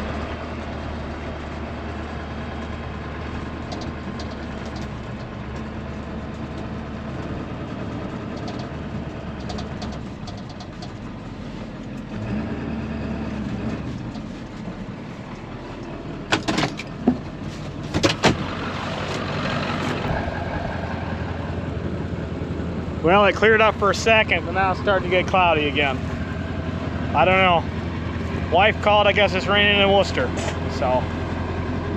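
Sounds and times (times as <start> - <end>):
vehicle engine running: 0.0 - 31.9.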